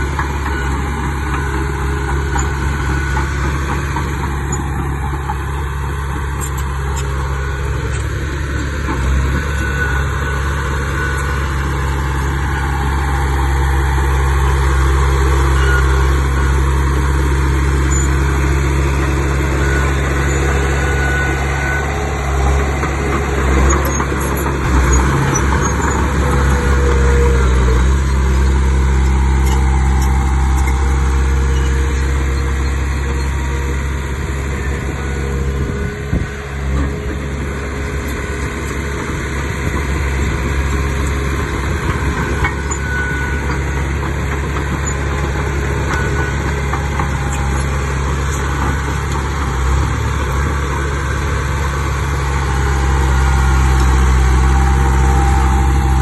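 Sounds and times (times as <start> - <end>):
heavy diesel engine running: 0.0 - 56.0.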